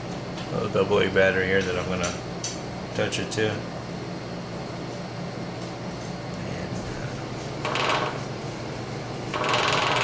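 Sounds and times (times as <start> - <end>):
vibration motor buzzing: 6.4 - 8.6, 9.2 - 10.0.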